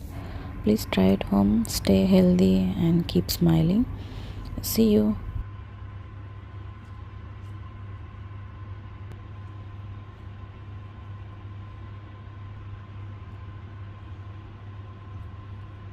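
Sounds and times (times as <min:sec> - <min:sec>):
steady low hum: 0:00.0 - 0:15.9.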